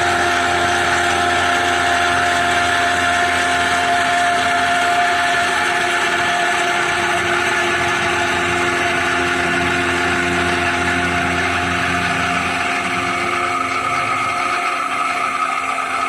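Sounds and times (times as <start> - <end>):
milling machine whining: 0.0 - 16.0.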